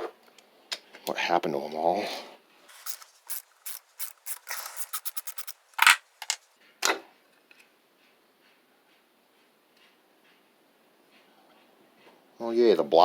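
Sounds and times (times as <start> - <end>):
faint handling of parts: 2.7 - 6.4
tools clicking and scraping: 2.7 - 6.4.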